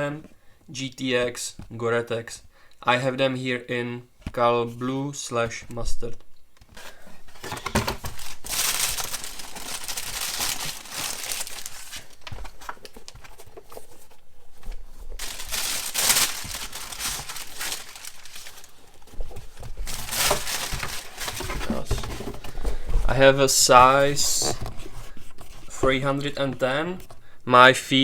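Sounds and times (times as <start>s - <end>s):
packaging crinkling and rustling: 6.6s - 27.2s.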